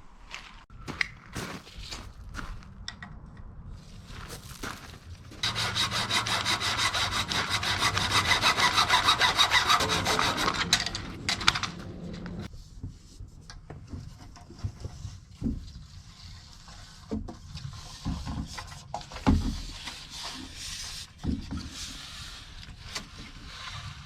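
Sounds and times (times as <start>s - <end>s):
saw cutting pipe: 5.4s - 12.5s.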